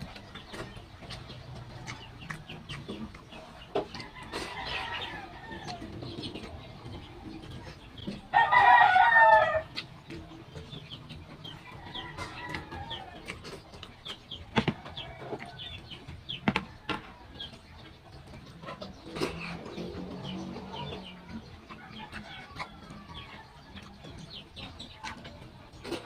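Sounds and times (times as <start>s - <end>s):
rooster crowing: 8.3s - 9.7s.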